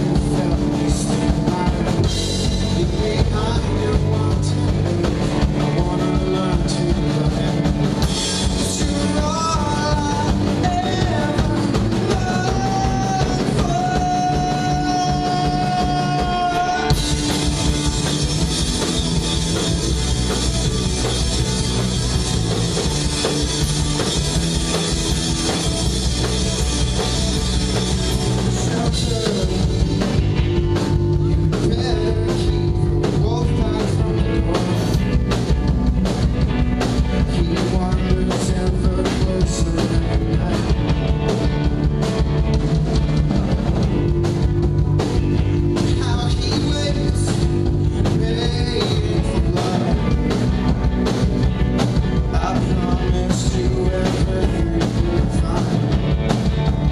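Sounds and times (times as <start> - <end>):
person singing: 0.0 - 18.0, 27.0 - 35.1, 37.2 - 41.3, 45.7 - 50.5, 52.2 - 56.2
drum beat: 0.0 - 56.9
live rock band playing: 0.0 - 56.9.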